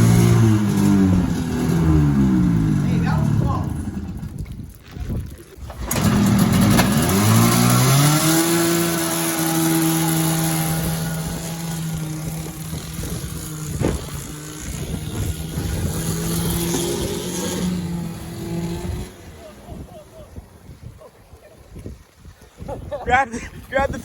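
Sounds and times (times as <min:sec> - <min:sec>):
snowmobile engine idling fast: 0:05.6 - 0:20.8.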